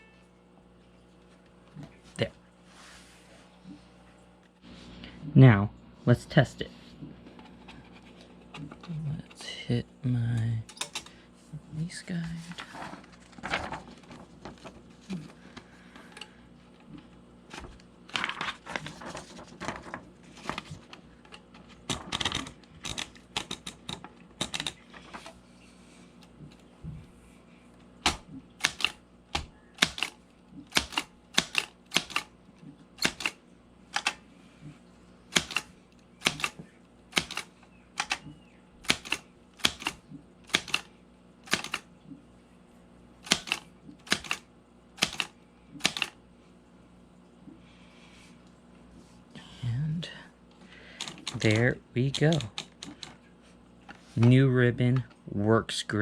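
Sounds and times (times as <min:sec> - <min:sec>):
typewriter mechanical clatter: 0:21.8 - 0:24.8, 0:28.0 - 0:32.3, 0:33.0 - 0:34.2, 0:35.3 - 0:41.9, 0:43.2 - 0:44.4, 0:45.0 - 0:46.2, 0:51.0 - 0:53.1
typewriter key strikes: 0:21.9 - 0:24.8, 0:28.0 - 0:32.3, 0:33.0 - 0:33.4, 0:34.0 - 0:34.2, 0:35.4 - 0:38.2, 0:38.8 - 0:40.9, 0:41.5 - 0:41.8, 0:43.3 - 0:44.4, 0:45.0 - 0:46.1.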